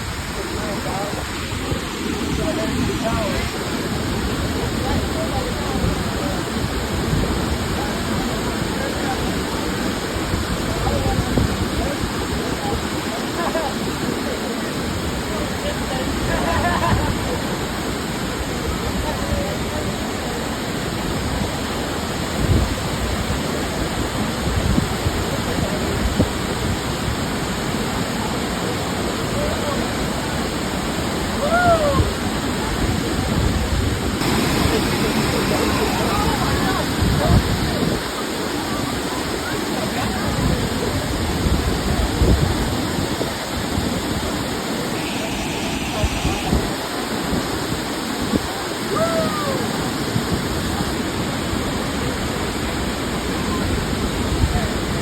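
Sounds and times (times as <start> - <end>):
waterfall roaring: 0.0 - 55.0.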